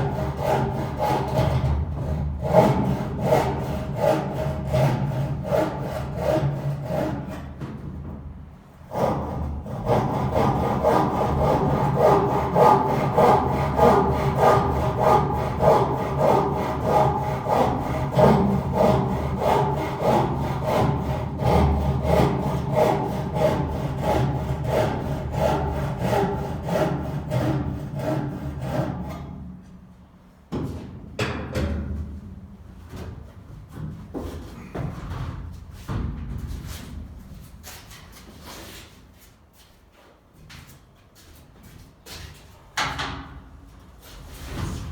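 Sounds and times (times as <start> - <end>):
hand saw cutting wood: 0.0 - 7.6, 8.9 - 29.4.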